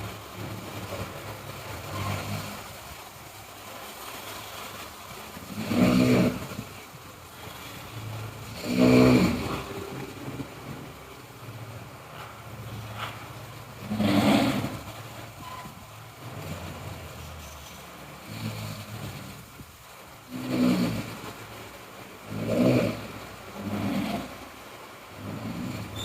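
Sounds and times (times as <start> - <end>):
person snoring loudly: 1.8 - 2.8, 5.4 - 6.8, 8.4 - 10.8, 13.8 - 14.9, 18.2 - 19.4, 20.3 - 21.4, 22.2 - 24.4, 25.2 - 26.0.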